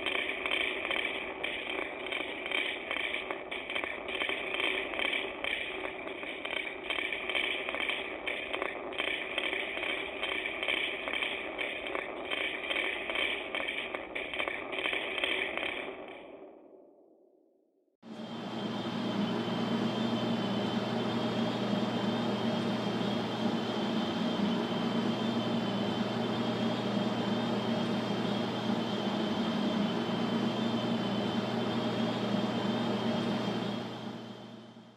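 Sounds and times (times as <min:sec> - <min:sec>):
mechanical drone with high whine: 0:18.1 - 0:34.9.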